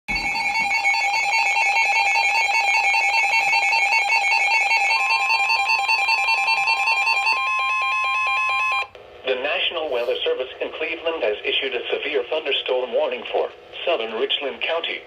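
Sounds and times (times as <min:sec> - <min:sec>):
harsh warbling alarm tone: 0:00.1 - 0:08.9.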